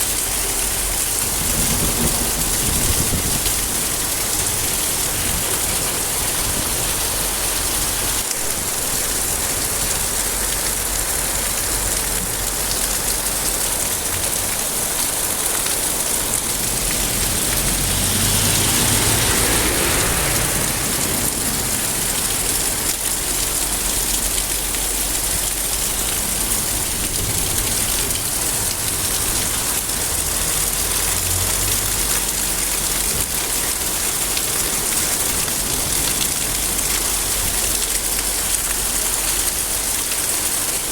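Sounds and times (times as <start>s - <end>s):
heavy rain pattering: 0.0s - 40.9s.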